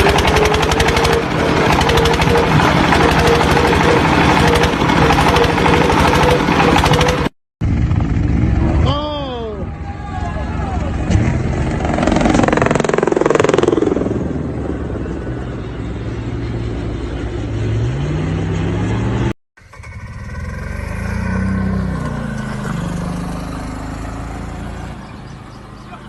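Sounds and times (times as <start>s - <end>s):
off-road vehicle engine revving: 0.0s - 9.1s, 17.6s - 26.0s.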